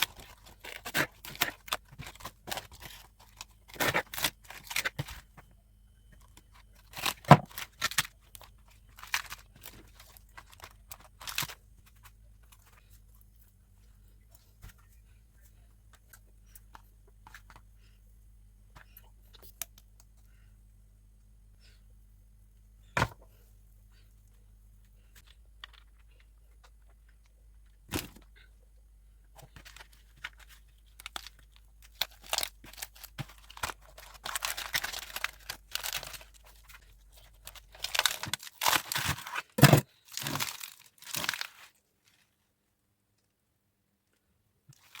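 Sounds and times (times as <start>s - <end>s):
lettuce leaves tearing and crackling: 31.0s - 36.4s, 37.4s - 39.5s, 40.1s - 41.7s.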